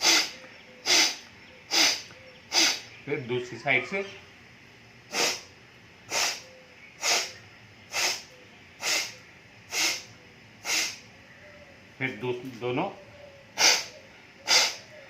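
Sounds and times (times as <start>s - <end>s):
sharp breaths through nostril: 13.6s - 14.8s.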